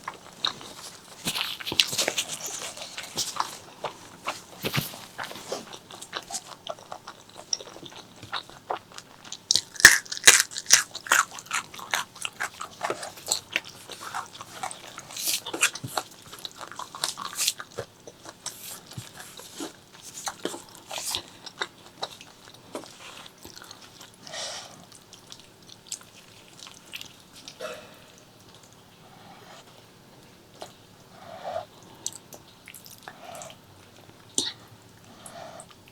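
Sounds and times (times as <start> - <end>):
wet chewing with crunchy bites: 0.0 - 35.9.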